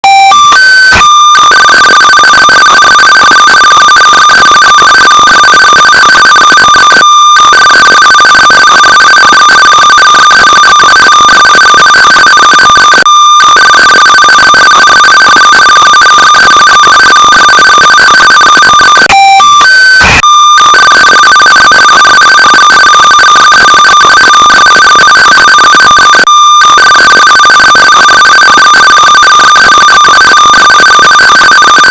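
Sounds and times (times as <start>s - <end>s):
short beeps of changing pitch: 0.0s - 1.1s, 18.6s - 20.4s
harsh two-tone alarm signal: 0.0s - 31.9s.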